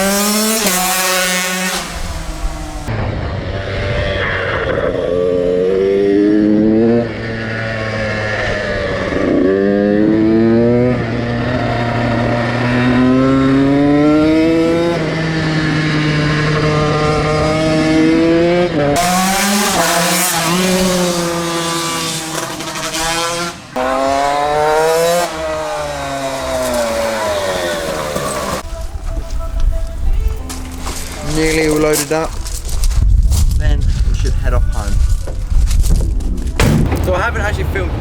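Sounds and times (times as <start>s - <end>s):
motocross bike engine revving: 0.0s - 2.9s, 3.6s - 28.8s.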